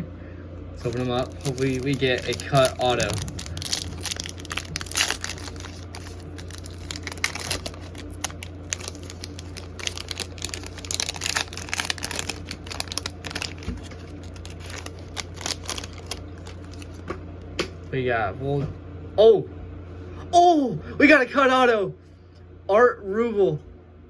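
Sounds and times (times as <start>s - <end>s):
low hum: 0.0s - 20.3s
foil wrapper crinkling and tearing: 0.8s - 17.1s.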